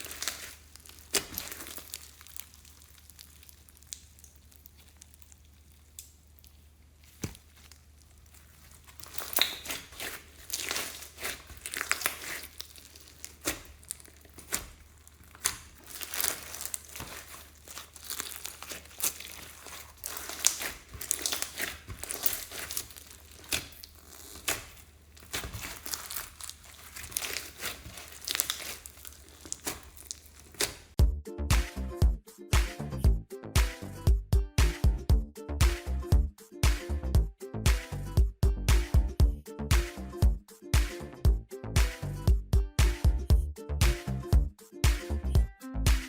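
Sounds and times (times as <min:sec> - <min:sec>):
slime crackling and squishing: 0:00.0 - 0:31.0.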